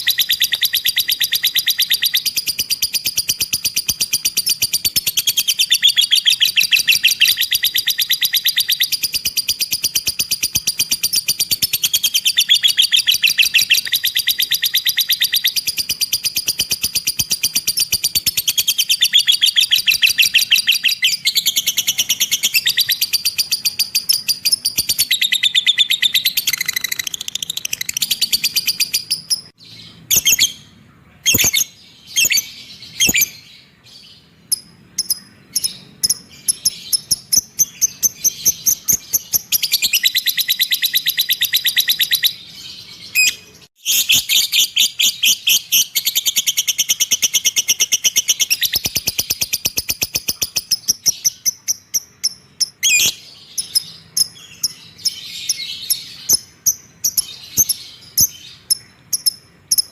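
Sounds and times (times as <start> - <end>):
lovebird chattering trill: 0.0 - 30.6, 34.5 - 42.5, 43.1 - 59.9
bird chirps: 0.0 - 59.9.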